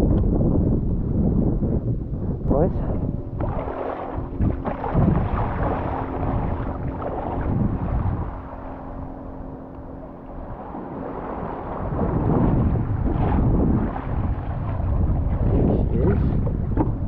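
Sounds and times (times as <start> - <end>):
jet ski engine hum: 0.0 - 17.0
wind buffeting microphone: 0.0 - 17.0
rushing water: 3.4 - 9.0, 9.9 - 17.0.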